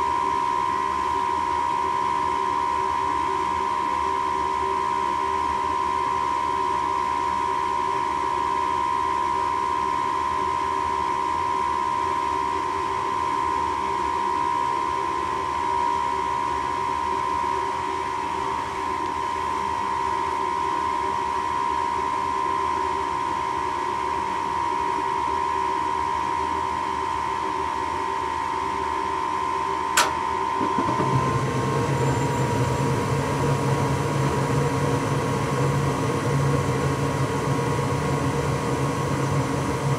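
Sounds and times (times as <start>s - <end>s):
furnace fan hum and whine: 0.0s - 39.9s
deeper furnace hum: 29.8s - 39.9s
sharp click: 30.0s - 31.2s.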